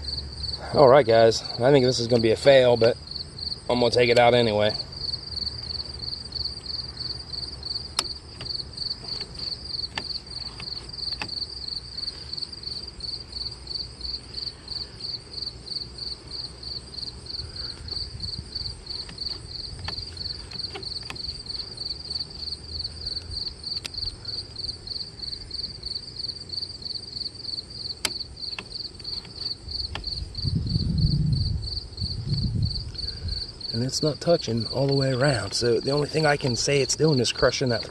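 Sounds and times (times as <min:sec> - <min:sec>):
insects trilling: 0:00.0 - 0:37.9
low rumble: 0:30.2 - 0:33.4.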